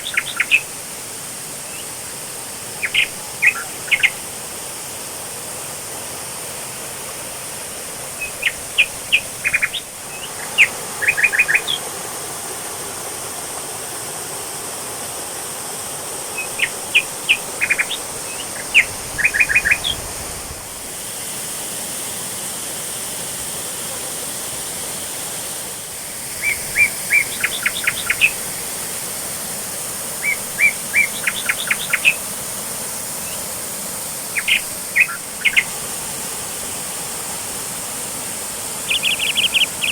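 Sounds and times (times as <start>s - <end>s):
songbird whistled notes: 0.0s - 0.7s, 2.8s - 4.2s, 8.2s - 11.8s, 16.4s - 20.0s, 26.4s - 28.4s, 30.2s - 32.2s, 34.3s - 35.7s, 38.9s - 39.9s
waterfall rushing: 0.0s - 39.9s.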